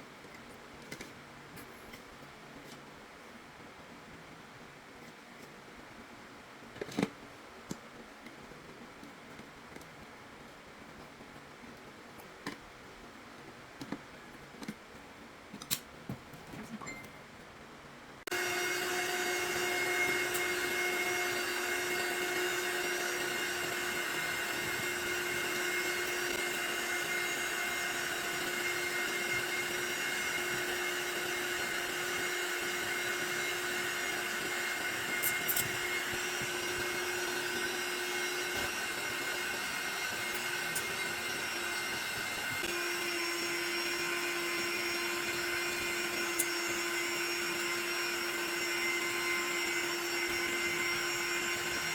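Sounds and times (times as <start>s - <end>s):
electric air pump motor drone: 18.3s - 51.9s.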